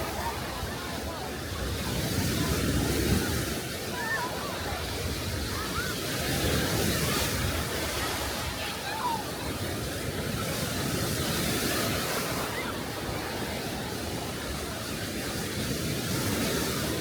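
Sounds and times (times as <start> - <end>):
surf washing onto beach: 0.0 - 17.0.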